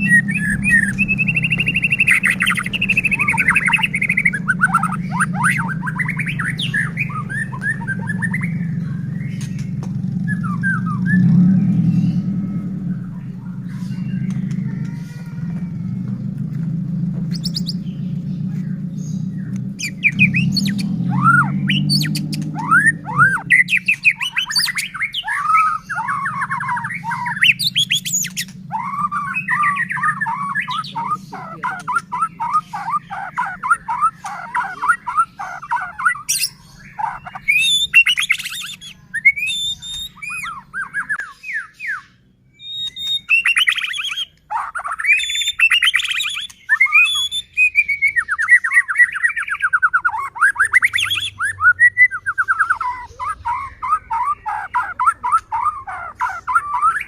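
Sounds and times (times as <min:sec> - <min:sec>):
songbird whistling and clicking: 0:00.0 - 0:08.5, 0:09.3 - 0:11.8, 0:14.2 - 0:15.0, 0:17.2 - 0:17.8, 0:19.4 - 0:57.0
steady low hum: 0:00.0 - 0:41.2.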